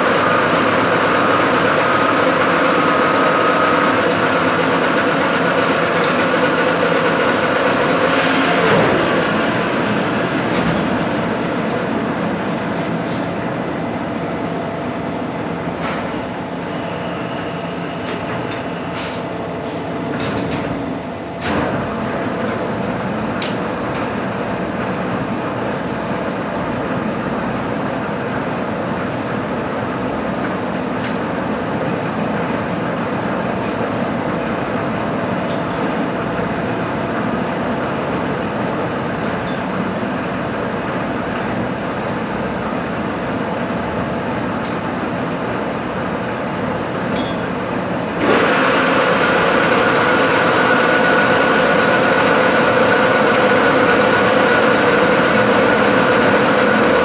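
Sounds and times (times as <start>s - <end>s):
faint machine whine: 0.0s - 4.4s
metal-cutting machine roaring: 0.0s - 11.8s, 48.1s - 57.0s.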